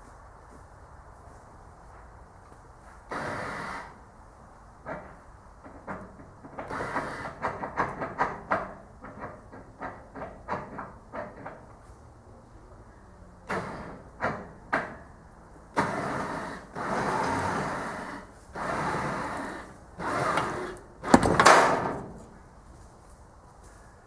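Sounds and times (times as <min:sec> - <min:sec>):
boat scraping and creaking: 0:15.8 - 0:22.5
wood cracking: 0:20.4 - 0:22.4.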